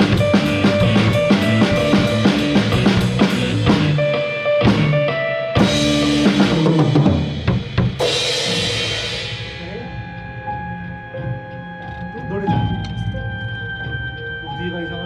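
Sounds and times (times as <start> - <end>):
drum kit playing: 0.0 - 14.0
music with sustained notes: 0.0 - 15.0.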